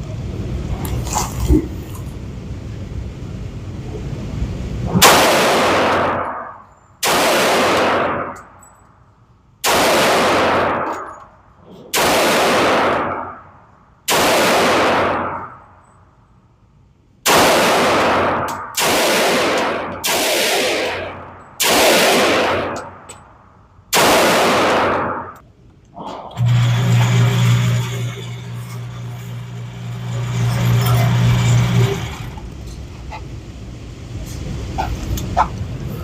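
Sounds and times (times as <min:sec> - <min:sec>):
gunshots: 0:04.9 - 0:08.4, 0:09.6 - 0:11.2, 0:11.9 - 0:13.5, 0:14.1 - 0:15.7, 0:17.2 - 0:23.1, 0:23.9 - 0:25.4.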